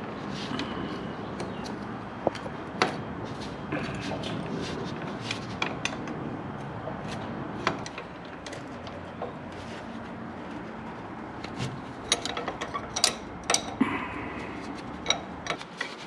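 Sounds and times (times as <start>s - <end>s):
metal tools clinking and knocking: 12.0s - 13.8s.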